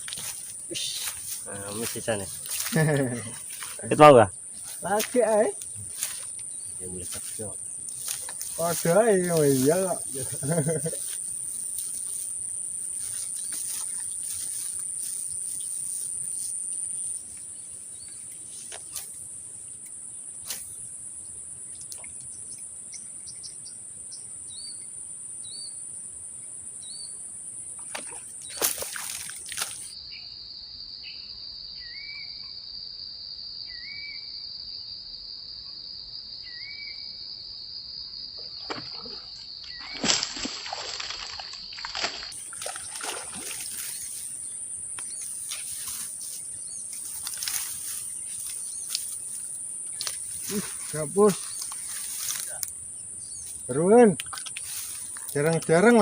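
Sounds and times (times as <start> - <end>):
insects droning: 0.0 - 56.0.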